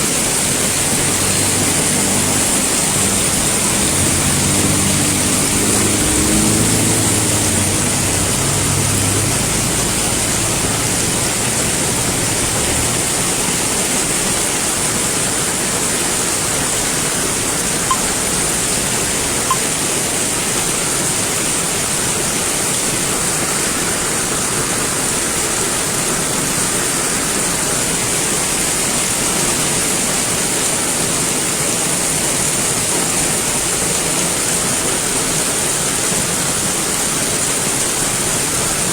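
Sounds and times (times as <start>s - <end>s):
vehicle engine: 0.0s - 14.4s
heavy rain pouring: 0.0s - 38.9s.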